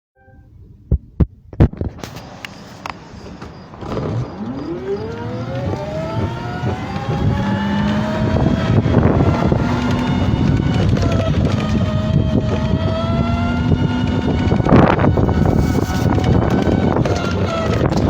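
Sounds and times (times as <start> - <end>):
scooter speeding up with whine: 2.2 - 18.0
rough grinding noise: 3.8 - 18.0.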